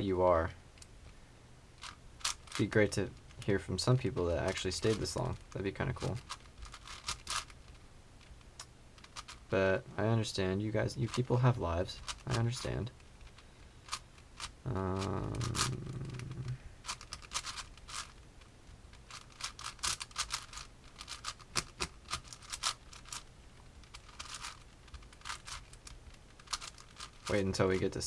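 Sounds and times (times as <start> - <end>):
rubik's cube clicking: 1.8 - 3.4, 4.5 - 9.5, 12.0 - 27.3
low hum: 12.8 - 21.0.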